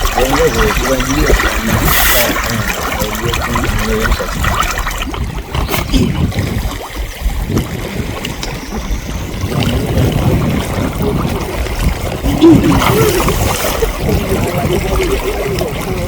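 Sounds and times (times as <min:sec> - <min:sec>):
faint voices: 0:00.0 - 0:04.4, 0:12.2 - 0:16.0
water splashing and trickling: 0:00.0 - 0:16.0.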